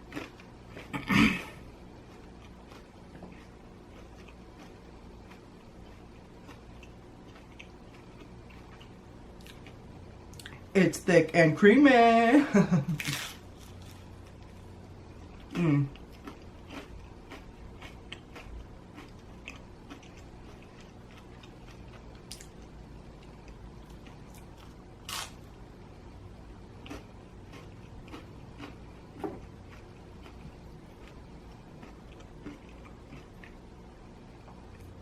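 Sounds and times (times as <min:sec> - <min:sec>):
person chewing crispy pizza: 0:00.0 - 0:10.7, 0:12.9 - 0:25.4, 0:26.2 - 0:35.0.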